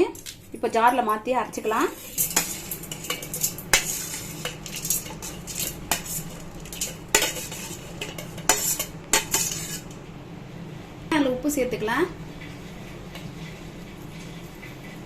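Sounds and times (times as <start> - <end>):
low steady hum: 0.0 - 15.0
spoon scraping a pan: 1.8 - 10.0.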